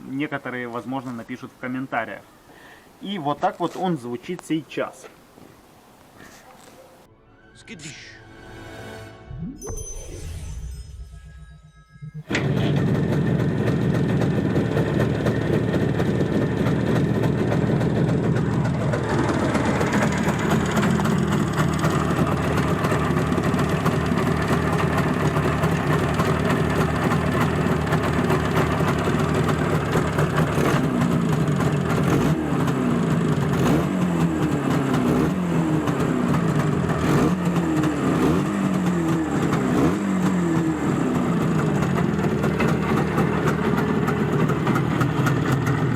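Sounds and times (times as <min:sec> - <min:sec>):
motorcycle engine idling and revving: 0:11.9 - 0:45.9.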